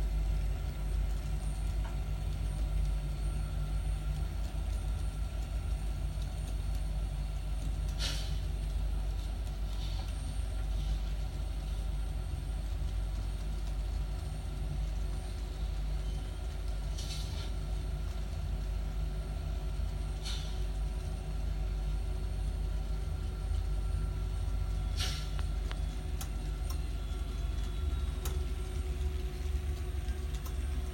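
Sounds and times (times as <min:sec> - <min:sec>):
model train rumbling on track: 0:00.0 - 0:30.9
brief hissing: 0:25.0 - 0:25.4.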